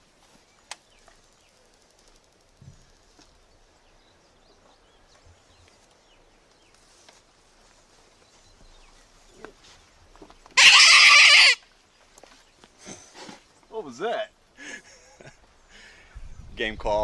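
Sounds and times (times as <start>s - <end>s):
faint outdoor background: 0.0s - 17.0s
animal-like game call cry: 10.6s - 11.6s.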